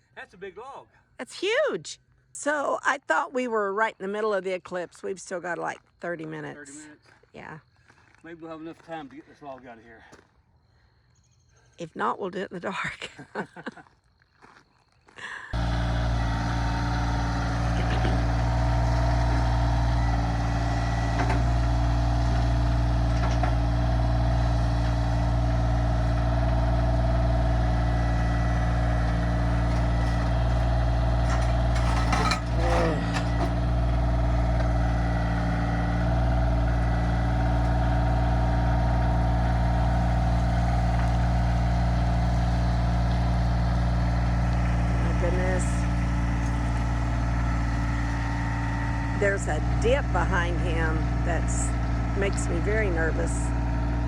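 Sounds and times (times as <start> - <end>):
tractor diesel engine running: 15.2 - 54.0.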